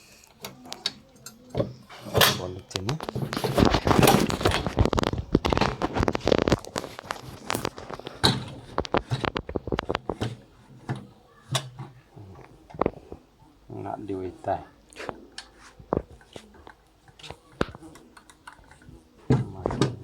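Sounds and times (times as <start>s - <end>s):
objects clattering and rustling: 0.3s - 13.8s, 14.4s - 20.0s
scattered clicks and knocks: 0.4s - 12.0s.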